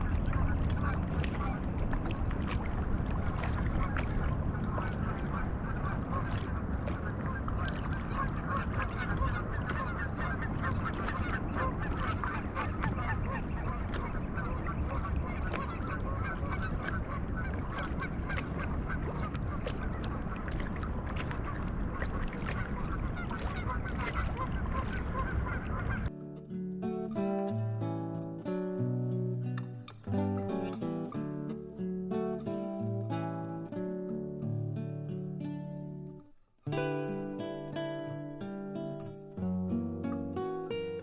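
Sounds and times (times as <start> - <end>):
acoustic guitar music: 0.0 - 2.1, 3.2 - 17.2, 25.9 - 41.0
steady low rumble: 0.0 - 26.1
geese honking: 0.2 - 1.9, 3.4 - 26.1.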